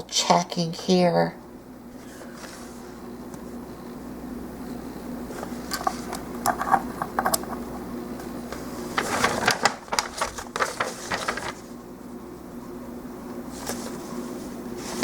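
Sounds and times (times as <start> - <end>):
steady low hum: 0.0 - 15.0
rustling: 9.0 - 11.7.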